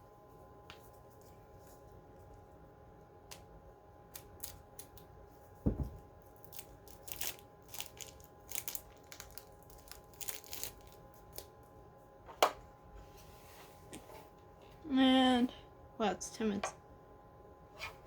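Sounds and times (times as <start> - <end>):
dull thump: 5.6 - 6.0
crinkling rustles: 6.2 - 11.7.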